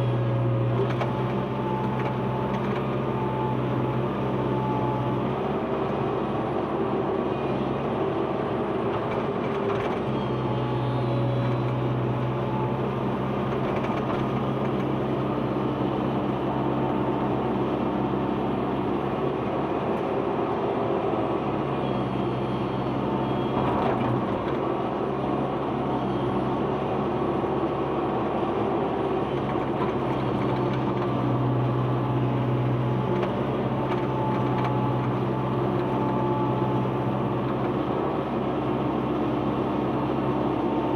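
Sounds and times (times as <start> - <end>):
excavator diesel engine: 0.0 - 40.9.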